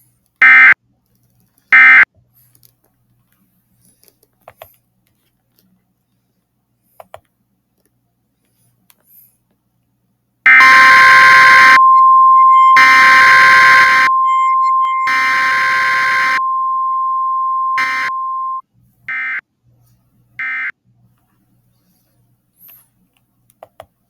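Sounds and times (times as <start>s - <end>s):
harsh buzzy data bursts: 10.5s - 18.6s
steady alert tone: 10.5s - 18.6s.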